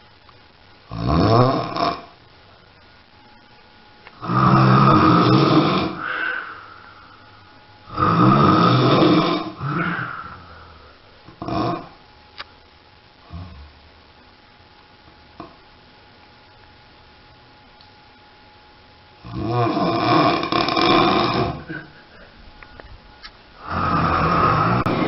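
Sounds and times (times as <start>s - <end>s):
person snoring loudly: 0.9s - 2.1s, 4.2s - 6.6s, 7.9s - 10.5s, 11.4s - 12.0s, 13.2s - 13.7s, 19.2s - 21.8s, 23.6s - 25.0s.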